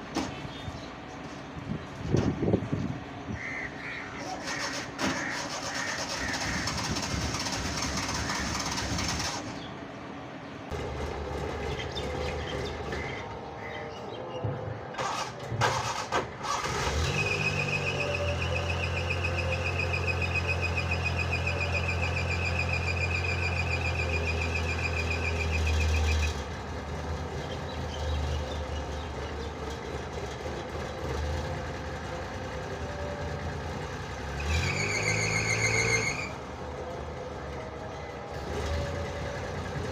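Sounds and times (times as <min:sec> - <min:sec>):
starter cranking engine: 0:04.3 - 0:09.6, 0:15.0 - 0:17.5.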